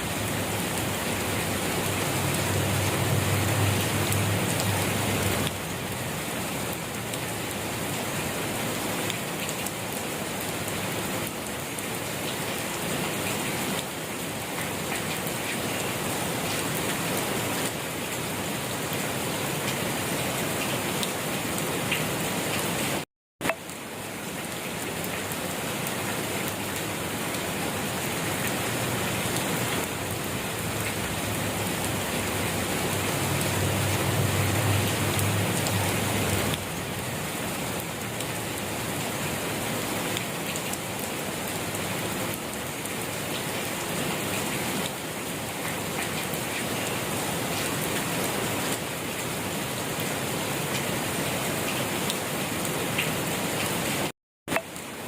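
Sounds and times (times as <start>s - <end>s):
steady rain patter: 0.0s - 55.0s.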